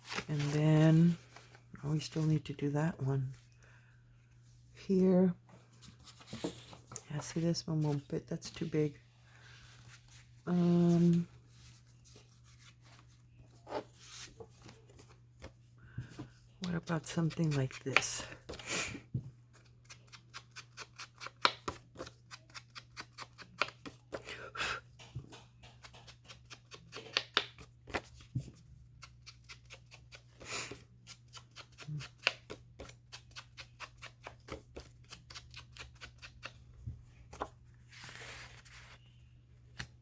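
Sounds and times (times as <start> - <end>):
paper rustling and sliding: 37.4 - 39.0.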